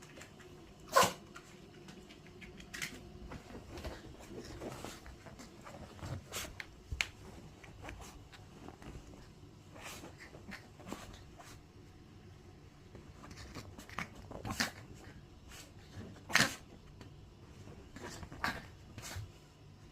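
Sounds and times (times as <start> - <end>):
dog sneezing: 0.9 - 1.2.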